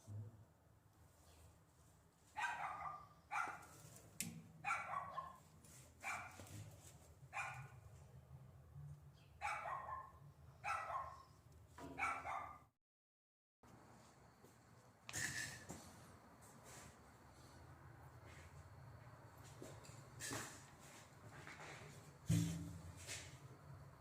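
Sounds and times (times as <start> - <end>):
dog barking: 2.4 - 3.8, 4.6 - 6.5, 7.3 - 7.8, 9.4 - 12.7.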